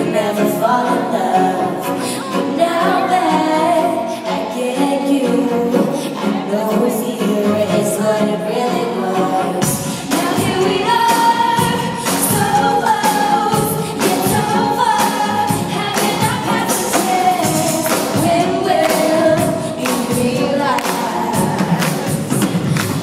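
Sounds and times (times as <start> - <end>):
woman singing pop song: 0.0 - 23.0
band playing: 9.6 - 23.0.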